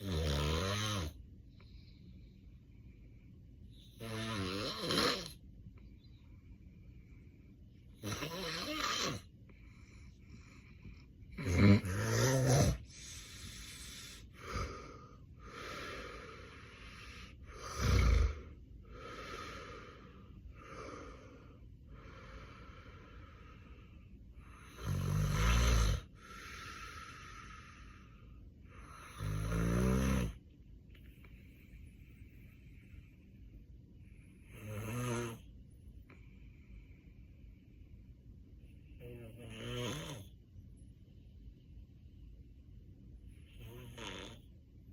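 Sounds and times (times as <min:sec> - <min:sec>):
man snoring heavily: 0:00.0 - 0:01.2, 0:04.0 - 0:05.4, 0:08.0 - 0:09.2, 0:11.4 - 0:21.4, 0:24.5 - 0:27.4, 0:28.9 - 0:30.4, 0:34.5 - 0:35.4, 0:39.1 - 0:40.3, 0:43.6 - 0:44.4
soft breaths: 0:01.1 - 0:04.0, 0:05.2 - 0:11.3, 0:12.1 - 0:24.8, 0:25.4 - 0:29.2, 0:30.3 - 0:34.6, 0:35.4 - 0:39.4.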